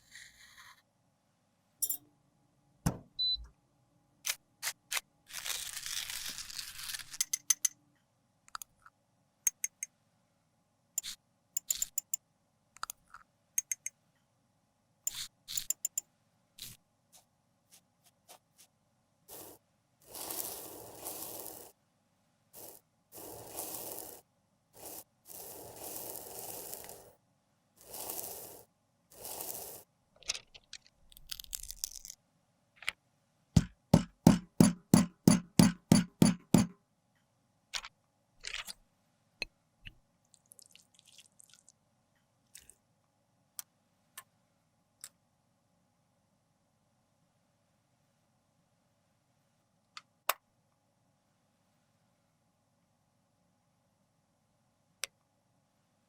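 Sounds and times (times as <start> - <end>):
makeup scraping strokes: 16.6 - 21.8, 22.6 - 24.2, 24.8 - 27.2, 27.8 - 29.8.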